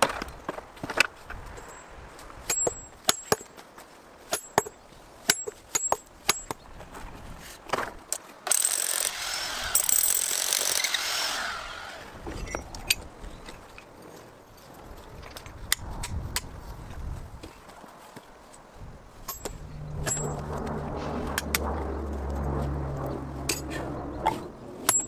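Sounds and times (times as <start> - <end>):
rushing scraping noise: 19.1 - 24.8
hammer striking steel wedges: 19.3 - 20.4.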